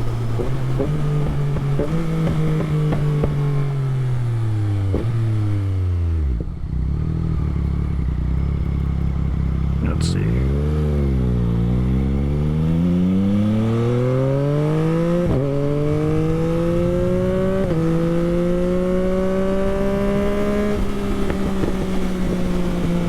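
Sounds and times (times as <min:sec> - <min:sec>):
motorcycle engine accelerating: 0:00.0 - 0:23.0.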